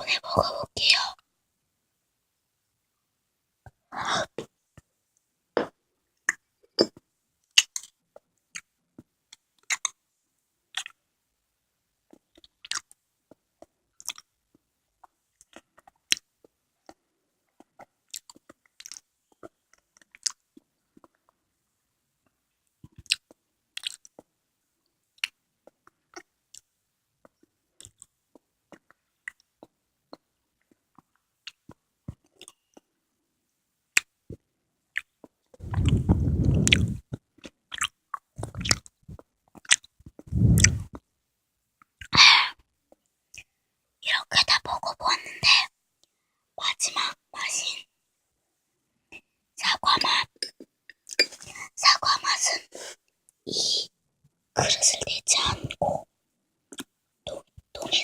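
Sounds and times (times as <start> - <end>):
wet chewing and smacking: 10.7 - 11.0, 12.1 - 13.0, 13.6 - 14.3, 16.9 - 21.3, 22.8 - 24.3, 34.9 - 41.0.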